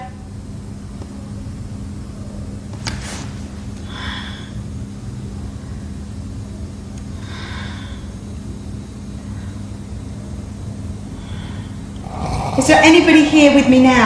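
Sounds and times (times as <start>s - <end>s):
steady low hum: 0.0s - 14.0s
heavy snore-like breaths: 11.2s - 13.0s.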